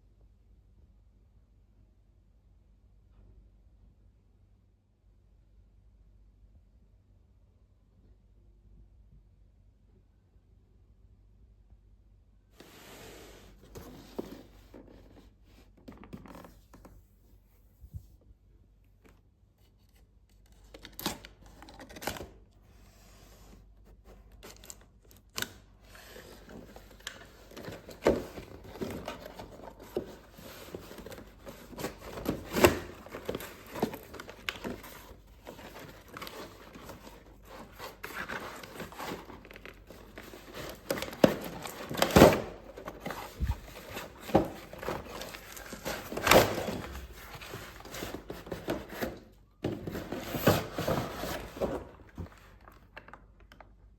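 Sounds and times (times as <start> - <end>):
packaging crinkling and tearing: 24.4 - 49.0.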